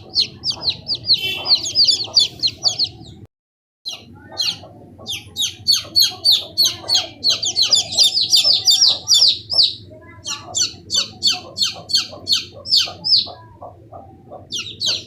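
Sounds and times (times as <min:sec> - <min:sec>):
chicks peeping: 0:00.0 - 0:03.3, 0:03.9 - 0:15.0.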